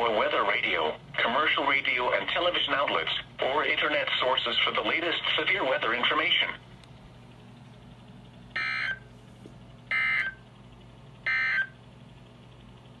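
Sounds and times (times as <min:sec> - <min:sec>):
faint radio hum: 0:00.0 - 0:06.9.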